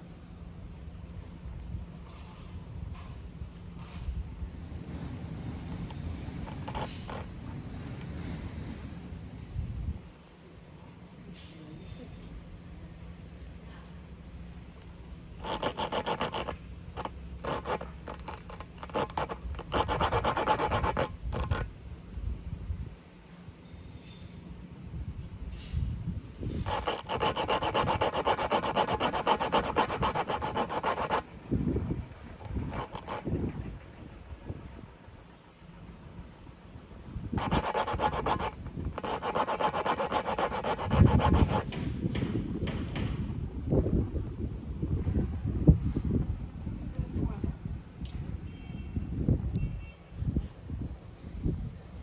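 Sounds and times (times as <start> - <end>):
rasp tool reaming tire puncture: 5.6 - 8.2, 14.8 - 21.7, 26.5 - 31.3, 32.4 - 33.3, 37.4 - 41.8.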